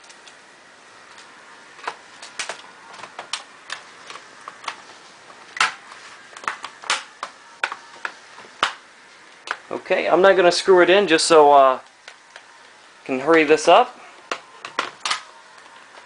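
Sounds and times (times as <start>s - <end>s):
plastic cover snapping: 1.8s - 4.8s, 5.5s - 8.8s, 14.2s - 16.0s.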